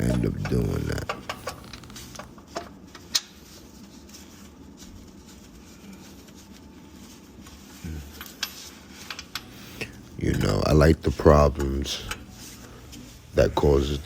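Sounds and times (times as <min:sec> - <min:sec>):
steady low hum: 0:00.0 - 0:02.4, 0:09.3 - 0:14.0.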